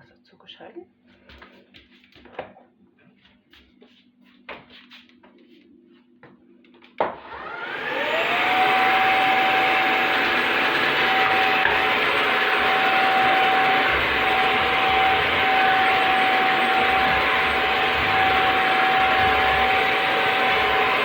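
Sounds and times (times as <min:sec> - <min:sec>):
vacuum motor whining: 0:07.2 - 0:21.0.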